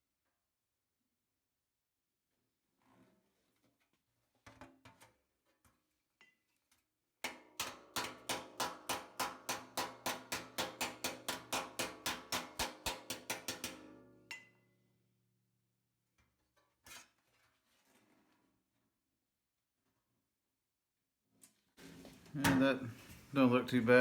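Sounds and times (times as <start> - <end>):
hammer blows on sheet steel: 7.6 - 13.9.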